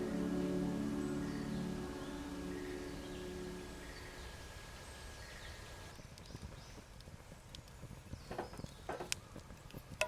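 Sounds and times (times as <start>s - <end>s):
low rumble: 0.0s - 6.0s
campfire crackling: 0.0s - 10.0s.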